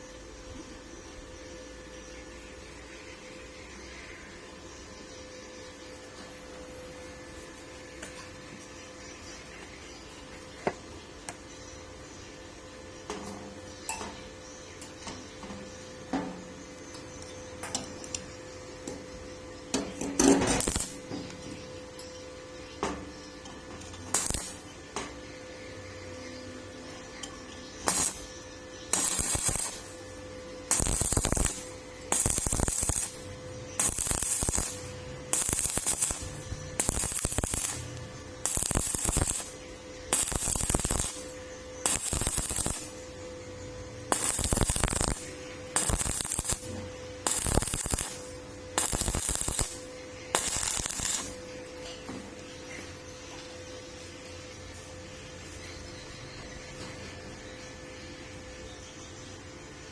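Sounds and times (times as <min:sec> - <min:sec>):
steady electrical hum: 0:00.0 - 0:59.9
welding arc crackling: 0:19.7 - 0:21.5, 0:23.8 - 0:25.0, 0:27.7 - 0:43.2, 0:43.9 - 0:51.6.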